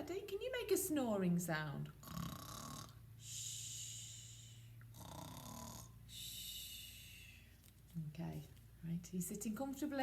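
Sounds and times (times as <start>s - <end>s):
person imitating snoring: 2.0s - 7.0s.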